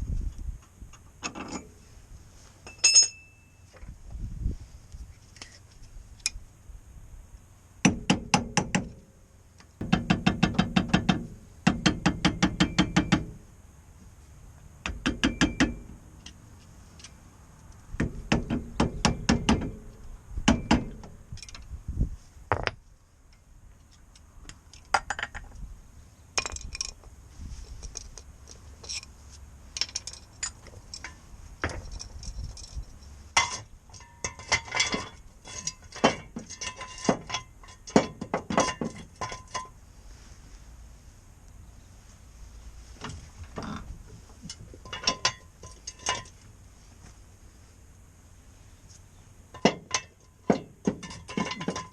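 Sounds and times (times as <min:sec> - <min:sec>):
metallic clinks of tools: 0:02.6 - 0:03.7.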